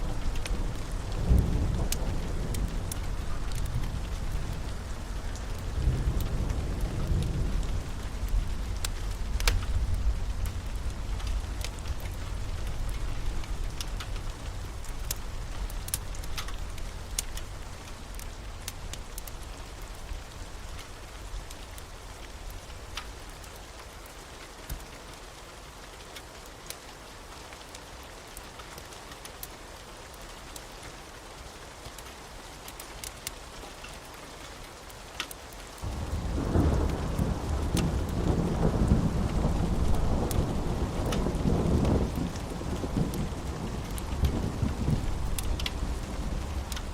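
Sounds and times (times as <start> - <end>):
thunder rumble: 0.0 - 17.7, 35.8 - 46.9
steady rain: 0.0 - 46.9
loud roll of thunder: 35.8 - 46.9.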